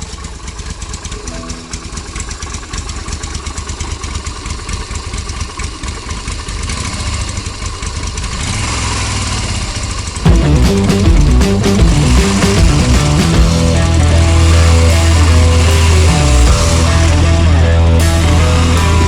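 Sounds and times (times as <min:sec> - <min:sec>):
motorcycle engine idling: 0:00.0 - 0:19.0
music: 0:01.2 - 0:02.2, 0:10.3 - 0:19.0.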